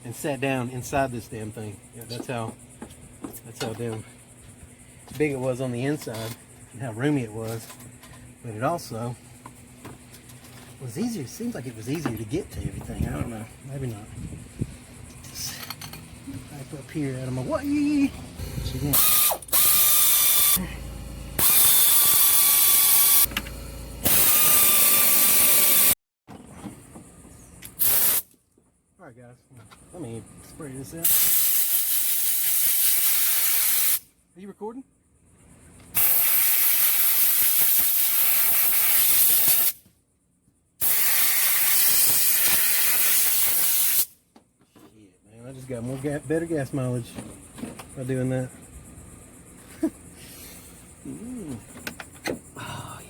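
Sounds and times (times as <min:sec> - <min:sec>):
power ratchet bursts: 0:18.4 - 0:26.0, 0:27.8 - 0:28.2, 0:31.0 - 0:34.0, 0:35.9 - 0:39.8, 0:40.8 - 0:44.1.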